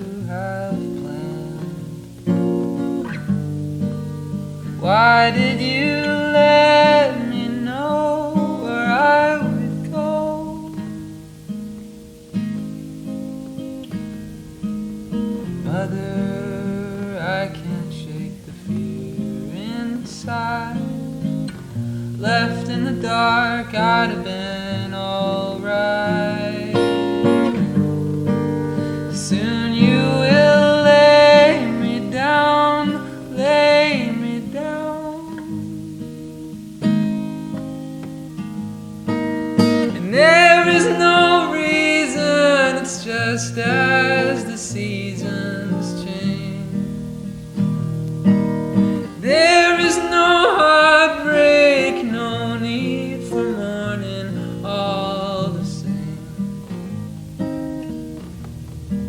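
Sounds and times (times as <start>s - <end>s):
person singing: 0.0s - 3.2s, 4.6s - 11.1s, 15.3s - 36.2s, 39.6s - 47.1s, 48.9s - 56.6s
acoustic guitar: 0.0s - 59.0s.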